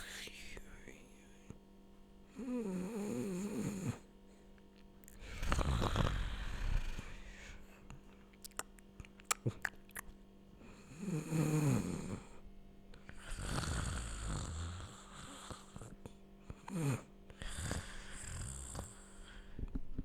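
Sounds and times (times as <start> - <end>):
person snoring: 2.3 - 4.1, 5.1 - 7.7, 10.8 - 12.4, 13.1 - 15.9, 16.6 - 19.5
breathy exhale: 5.2 - 7.9.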